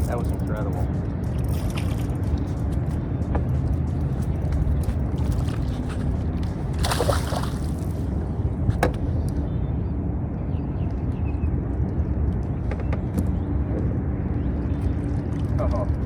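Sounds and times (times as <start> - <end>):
steady low rumble: 0.0 - 16.0
water sloshing and splashing: 1.2 - 8.9, 14.7 - 16.0.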